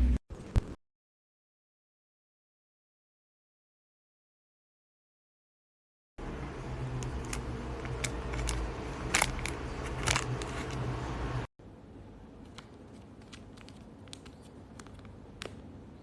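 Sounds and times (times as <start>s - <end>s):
steady low hum: 6.2s - 16.0s.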